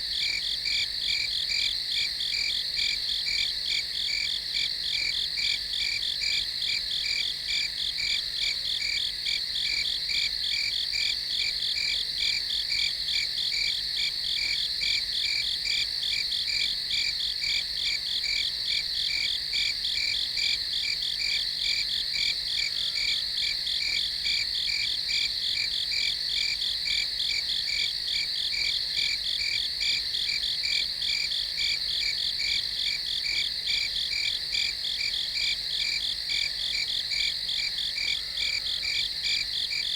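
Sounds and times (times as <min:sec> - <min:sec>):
crickets chirping: 0:18.2 - 0:39.9.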